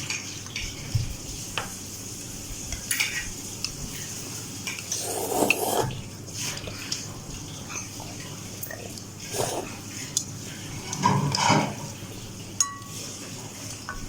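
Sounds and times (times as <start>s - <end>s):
cutlery clinking against bowl: 10.9s - 11.8s, 12.6s - 13.0s.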